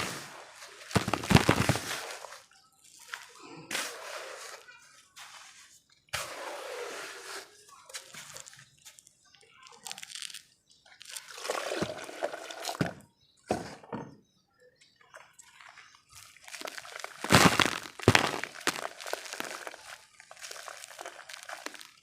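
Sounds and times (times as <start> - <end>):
wet dirt clumps crumbling: 0.0 - 3.5, 7.9 - 13.0, 15.3 - 22.0.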